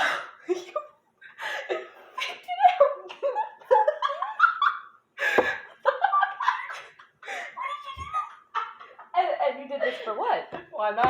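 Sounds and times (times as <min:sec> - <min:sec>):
people laughing: 0:01.4 - 0:09.2.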